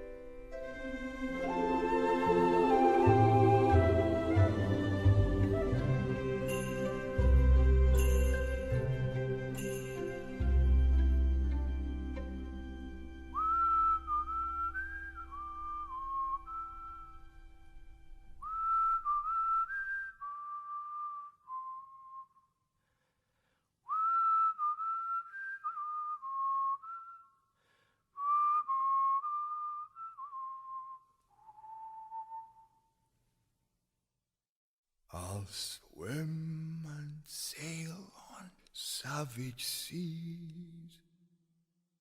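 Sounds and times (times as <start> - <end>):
person whistling a melody: 1.5 - 8.8, 13.2 - 17.4, 18.4 - 22.6, 23.9 - 27.6, 28.2 - 33.0.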